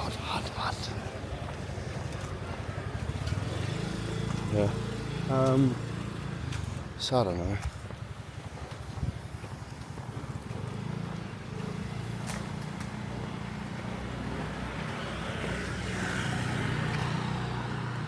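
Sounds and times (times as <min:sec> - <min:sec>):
passing vehicles: 0:00.0 - 0:18.0.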